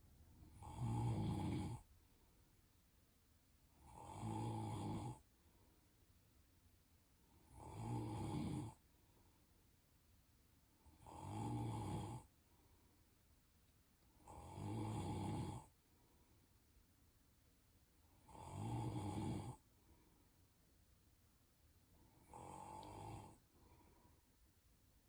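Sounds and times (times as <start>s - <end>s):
man snoring: 0.5s - 1.8s, 3.8s - 5.2s, 7.5s - 8.8s, 10.9s - 12.3s, 14.2s - 15.7s, 18.2s - 19.6s, 22.2s - 23.4s.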